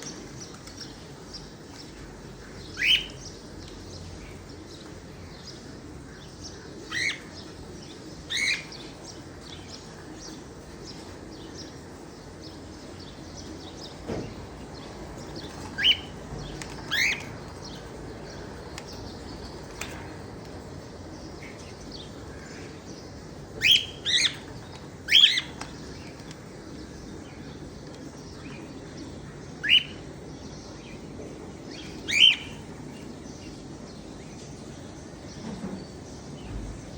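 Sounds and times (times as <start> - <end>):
steady background hiss: 0.0 - 36.9.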